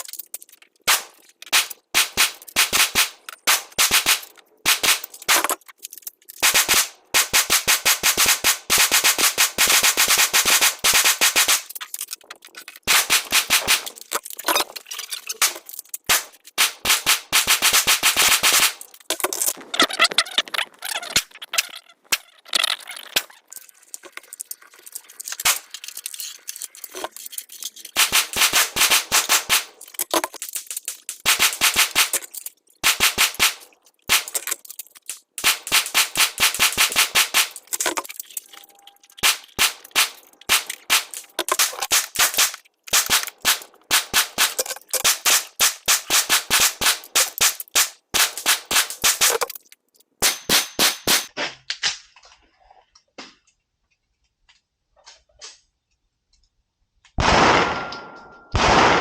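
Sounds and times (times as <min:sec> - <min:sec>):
pistol shots: 0:57.2 - 0:59.0.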